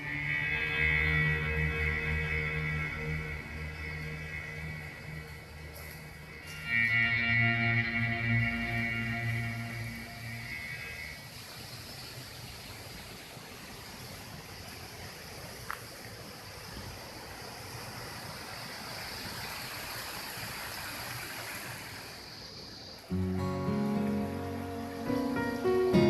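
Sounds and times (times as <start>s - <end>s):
guitar music: 0.0s - 11.1s, 23.1s - 26.0s
stream flowing over rocks: 8.7s - 26.0s.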